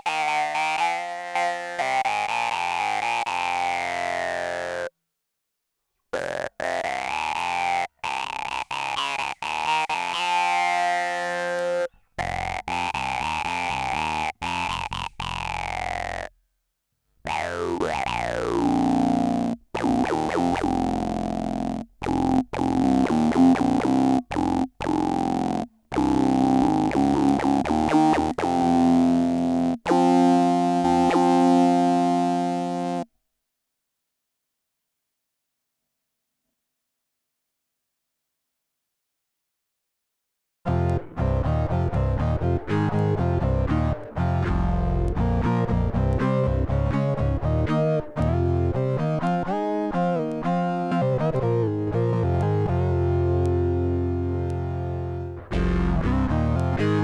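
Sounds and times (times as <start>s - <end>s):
synth bass notes: 6.2s - 16.3s, 17.2s - 33.1s, 40.7s - 48.9s, 51.2s - 57.0s.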